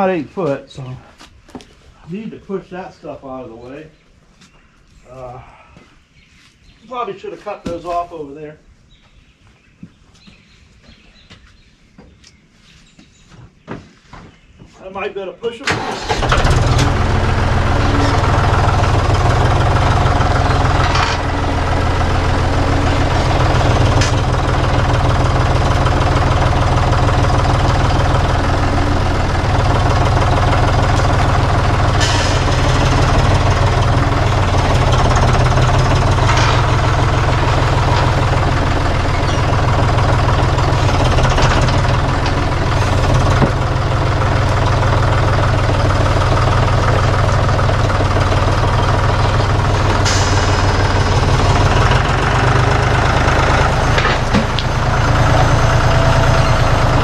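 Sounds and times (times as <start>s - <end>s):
heavy equipment engine running: 15.7s - 57.0s
sharp knocks and clanks: 19.9s - 21.5s, 23.4s - 24.6s, 30.2s - 39.9s, 40.6s - 43.8s, 46.2s - 54.8s.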